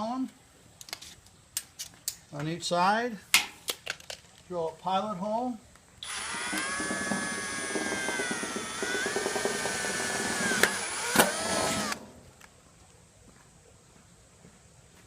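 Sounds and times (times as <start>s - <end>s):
power drill drilling metal: 6.0s - 12.1s.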